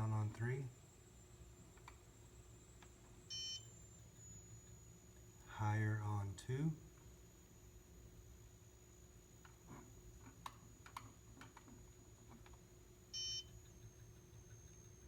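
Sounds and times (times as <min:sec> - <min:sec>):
electric fireplace whine and hum: 0:00.0 - 0:15.0
short electronic beep: 0:03.3 - 0:03.7, 0:13.2 - 0:13.6.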